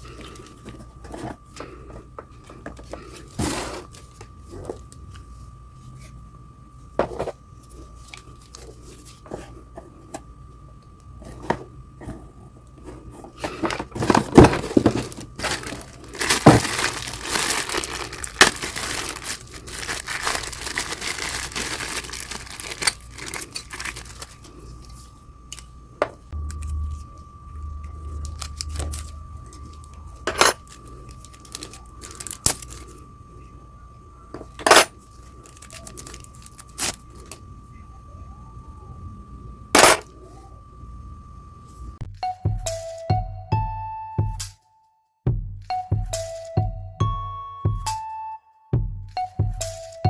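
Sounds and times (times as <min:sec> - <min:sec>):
packaging rustling and crinkling: 0:13.2 - 0:25.7, 0:27.6 - 0:33.0, 0:34.4 - 0:37.4.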